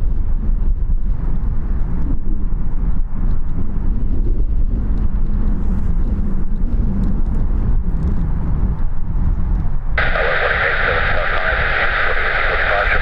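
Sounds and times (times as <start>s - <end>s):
hissing radio scanner speaker: 10.0s - 13.0s
jet engines rumbling: 10.0s - 13.0s.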